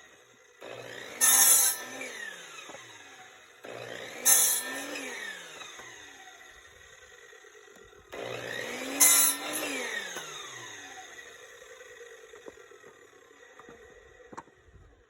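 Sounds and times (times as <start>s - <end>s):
miter saw motor whining: 0.0s - 14.7s
saw blade cutting wood: 0.6s - 6.4s, 7.8s - 13.1s.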